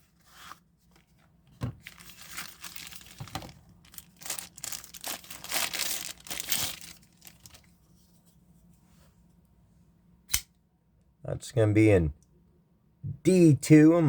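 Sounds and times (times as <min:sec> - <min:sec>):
crinkling and rustling: 0:00.0 - 0:08.8.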